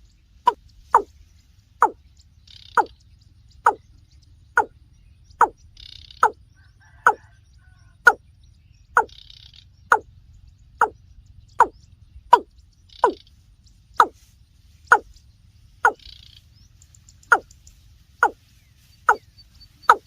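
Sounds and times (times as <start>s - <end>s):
bird calling hollow falling notes: 0.5s - 1.1s, 12.3s - 13.2s, 15.8s - 16.1s.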